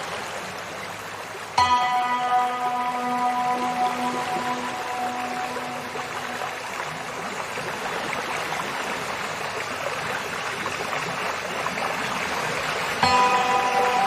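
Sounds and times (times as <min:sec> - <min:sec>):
stream flowing: 0:00.0 - 0:14.0
soft background music chord: 0:01.6 - 0:07.4, 0:13.0 - 0:14.0.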